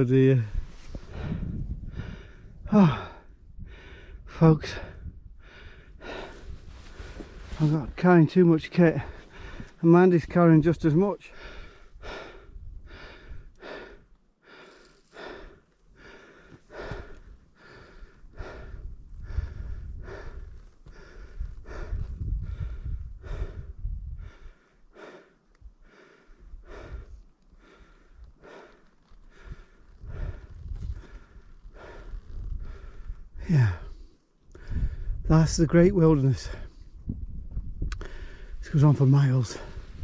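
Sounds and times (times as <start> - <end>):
person breathing hard: 0.6 - 7.9, 9.0 - 9.8, 11.3 - 35.2, 38.0 - 38.6, 39.5 - 40.0.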